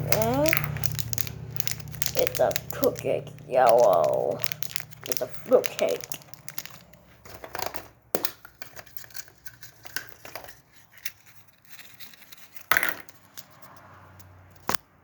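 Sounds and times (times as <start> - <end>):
wrappers crinkling: 0.0 - 7.8.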